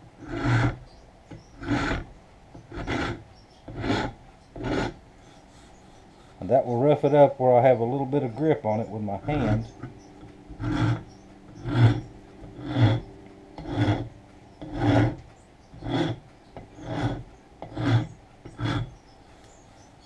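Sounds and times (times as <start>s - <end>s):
rasp scraping wooden handle: 0.2s - 5.0s, 9.2s - 19.0s.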